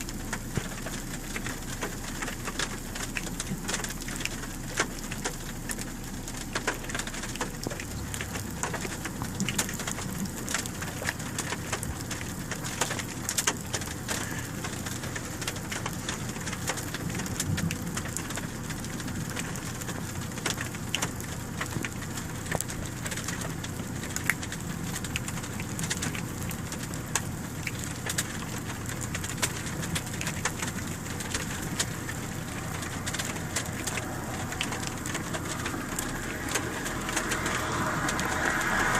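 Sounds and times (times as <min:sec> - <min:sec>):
rain drops ticking: 0:00.0 - 0:38.9.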